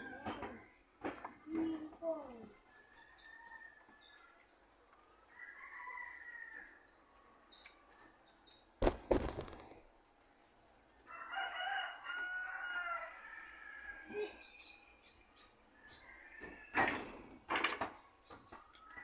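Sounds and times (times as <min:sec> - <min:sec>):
rooster crowing: 0:05.3 - 0:06.7, 0:11.1 - 0:14.1.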